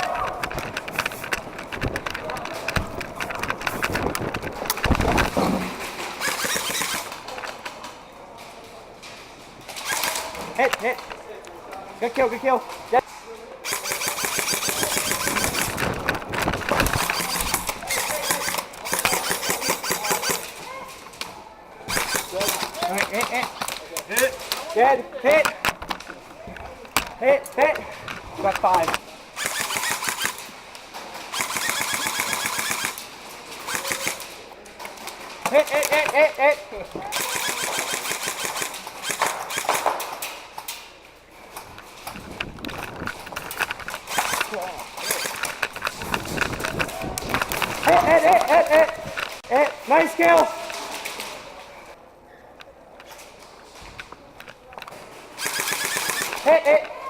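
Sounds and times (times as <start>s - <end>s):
running footsteps: 0.0s - 7.5s
airsoft guns firing in bursts: 2.8s - 7.3s, 9.8s - 10.4s, 13.6s - 20.5s, 21.9s - 23.7s, 29.4s - 30.5s, 31.3s - 34.4s, 37.1s - 40.3s, 44.0s - 46.1s, 55.4s - 56.7s.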